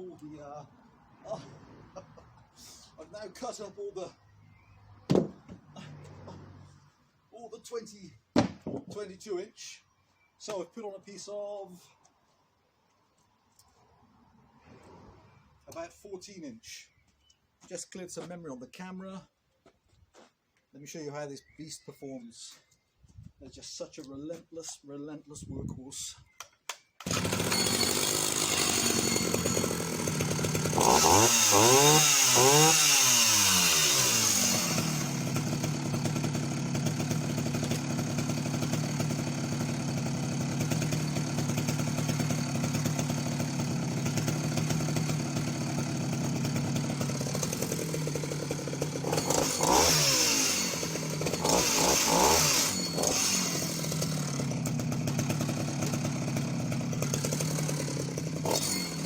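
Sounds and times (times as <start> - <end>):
chainsaw idling and revving: 27.0 - 59.0.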